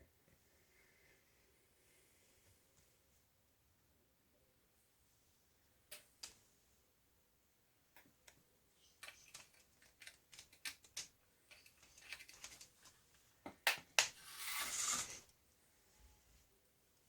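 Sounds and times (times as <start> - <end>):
scraping rustle: 14.2 - 15.3.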